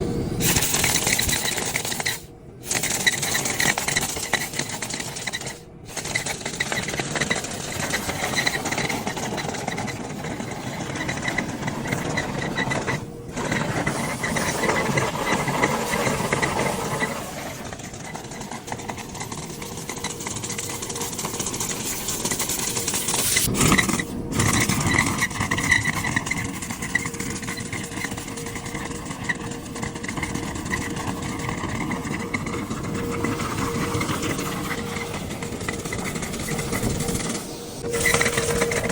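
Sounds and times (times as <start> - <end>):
cleaning machine motor rattling: 0.0 - 38.9.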